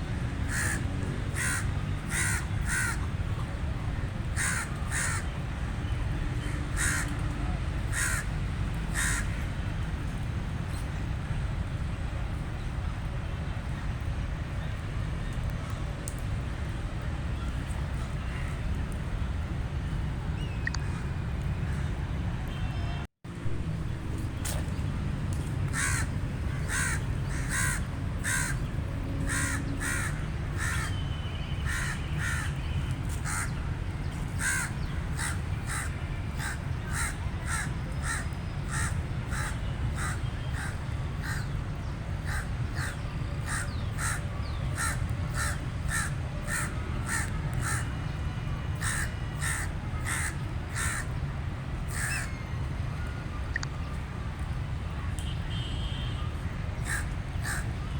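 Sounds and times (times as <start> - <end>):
crow cawing: 0.5 - 0.8, 1.4 - 3.0, 4.4 - 5.2, 6.8 - 7.1, 7.9 - 8.3, 9.0 - 9.2, 25.7 - 28.6, 29.3 - 30.9, 31.6 - 32.4, 34.4 - 41.4, 44.8 - 47.8, 48.8 - 51.1, 56.8 - 57.6
steady low rumble: 23.3 - 29.3.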